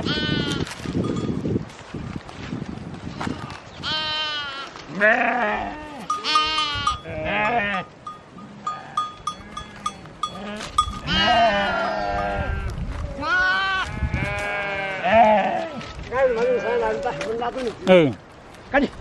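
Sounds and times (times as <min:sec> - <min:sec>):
sheep bleating: 0:00.0 - 0:00.6, 0:03.4 - 0:17.3
small bells clinking: 0:01.0 - 0:01.4, 0:06.1 - 0:11.3.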